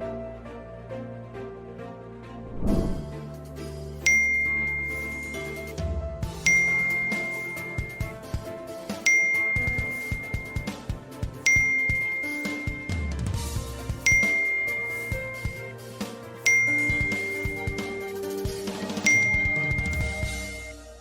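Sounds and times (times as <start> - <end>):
bell-like chime: 4.0 - 5.8, 6.4 - 15.8, 16.4 - 21.0.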